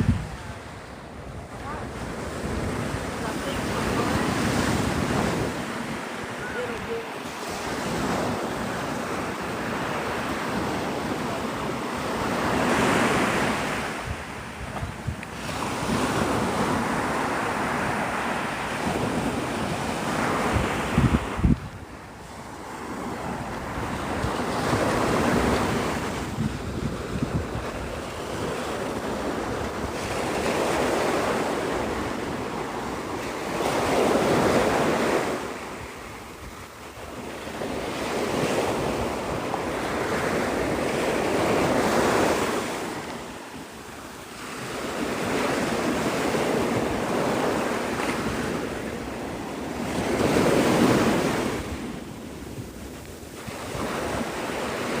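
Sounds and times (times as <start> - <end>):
wind rumbling on microphone: 0.0 - 43.6
surf breaking on a beach: 0.0 - 55.0.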